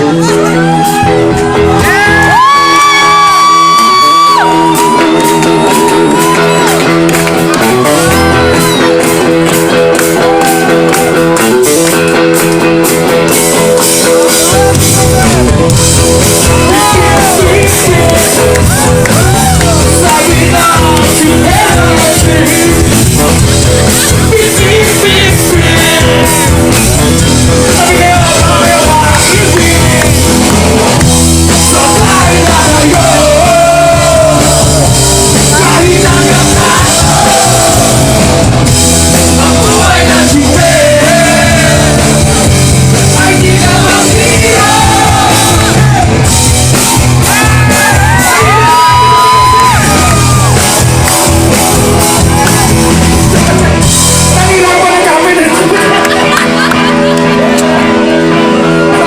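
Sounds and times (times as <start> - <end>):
crowd shouting and yelling: 0.0 - 59.0
live band music: 0.0 - 59.0
singer's voice: 14.2 - 46.3, 47.2 - 59.0.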